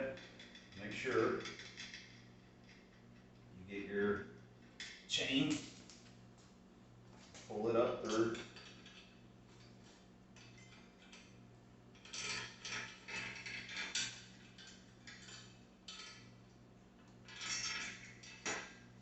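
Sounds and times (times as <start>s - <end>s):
bicycle chain clinking and rattling: 0.1s - 3.0s, 12.0s - 16.3s, 17.2s - 18.8s.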